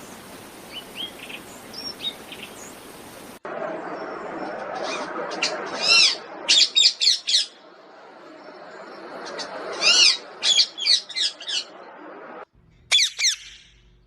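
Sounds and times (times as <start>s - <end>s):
parrot squawking: 12.9s - 13.7s.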